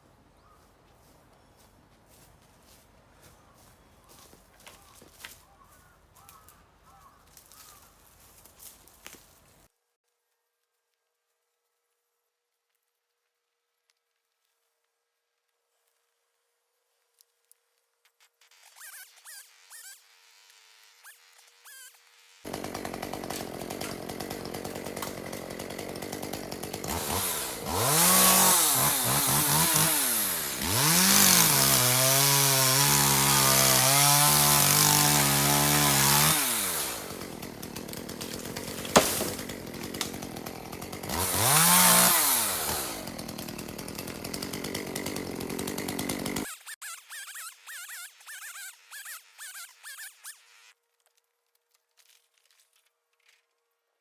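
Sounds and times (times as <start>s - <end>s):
chainsaw idling and revving: 18.8s - 50.7s.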